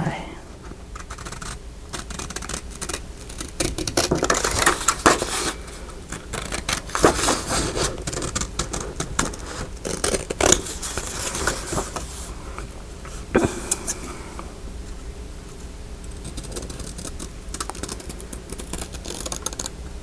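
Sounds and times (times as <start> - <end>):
paper scratching and rustling: 0.9 - 13.3, 16.1 - 19.7
scissors snipping paper: 1.0 - 12.8, 16.0 - 19.8.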